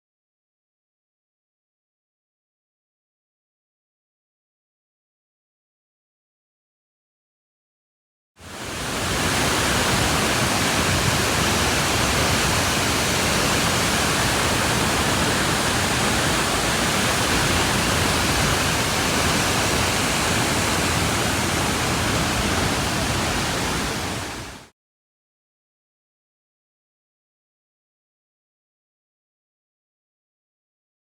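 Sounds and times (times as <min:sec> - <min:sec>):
loud rushing of falling water: 0:08.4 - 0:24.7.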